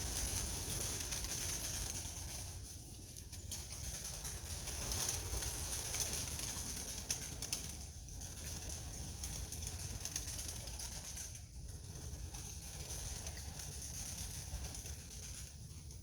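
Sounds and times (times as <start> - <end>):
pigeons flapping wings: 3.7 - 15.2.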